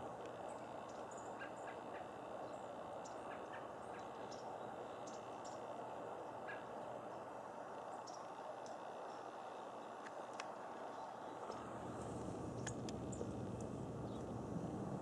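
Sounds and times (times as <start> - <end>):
birds chirping: 0.0 - 14.5
outdoor ambience hiss: 0.0 - 15.0.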